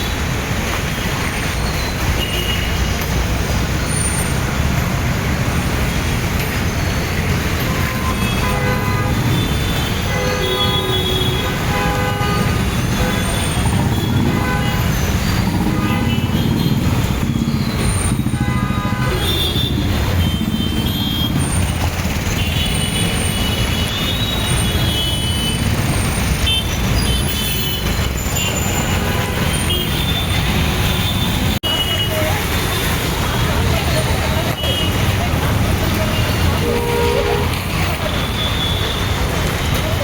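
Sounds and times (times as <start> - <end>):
rumble of engines: 0.0 - 40.0
vehicle horns honking: 7.6 - 33.0, 34.4 - 39.4.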